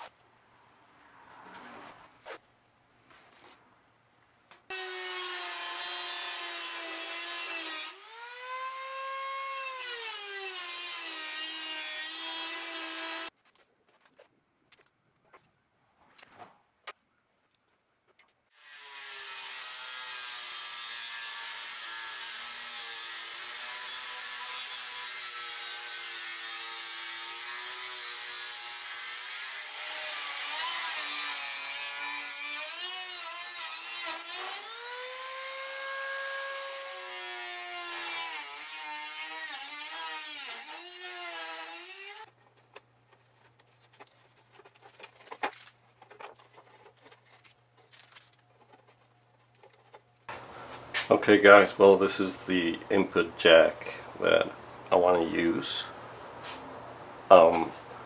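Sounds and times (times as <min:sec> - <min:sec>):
electric grinder grinding steel: 0:04.7 - 0:13.3, 0:18.6 - 0:42.3.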